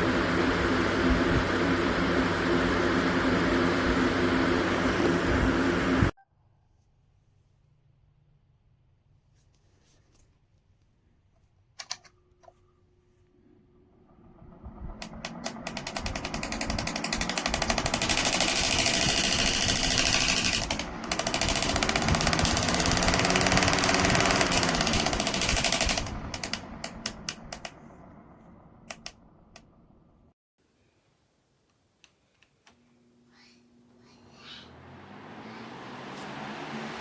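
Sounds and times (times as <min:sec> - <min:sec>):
box fan clicking rattle: 0:14.1 - 0:30.0.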